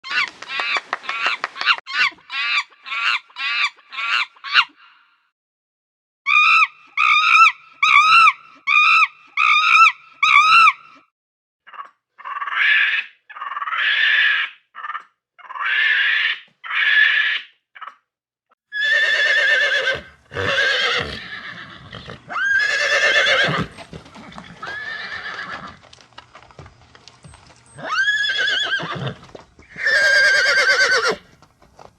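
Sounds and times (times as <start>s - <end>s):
horse whinnying: 18.7s - 25.8s, 27.7s - 31.3s.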